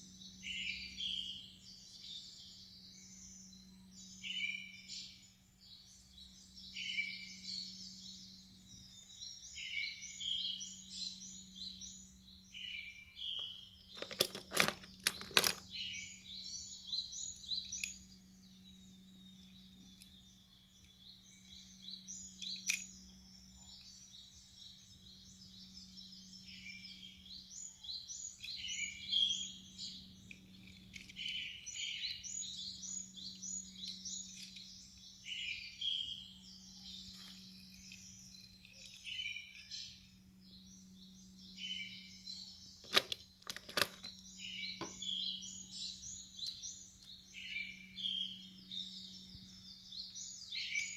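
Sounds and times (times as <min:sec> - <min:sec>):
birds chirping: 0:05.9 - 0:50.9
sharp clicks: 0:14.0 - 0:15.6, 0:42.8 - 0:44.1.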